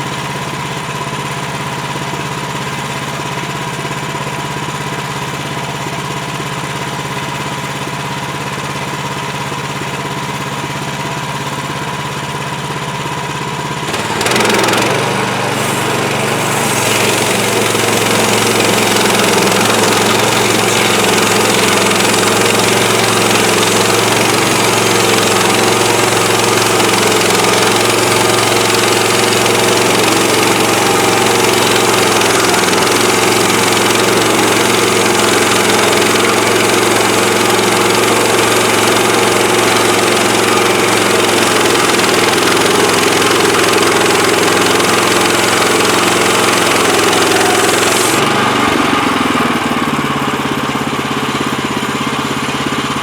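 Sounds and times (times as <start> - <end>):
gasoline engine running: 0.0 - 53.0
band blade sawing a log: 13.9 - 49.5.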